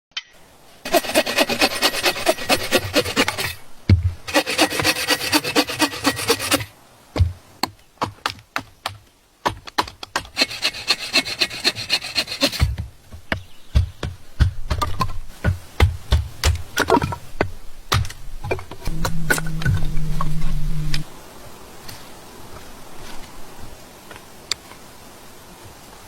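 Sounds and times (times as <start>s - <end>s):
hand saw cutting wood: 0.9s - 3.6s, 4.3s - 6.7s, 10.2s - 12.8s.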